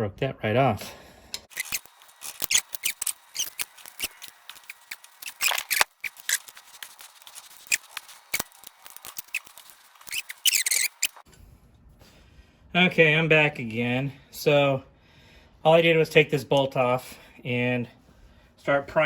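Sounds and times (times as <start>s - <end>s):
metal tools clicking and scraping: 1.3s - 11.2s.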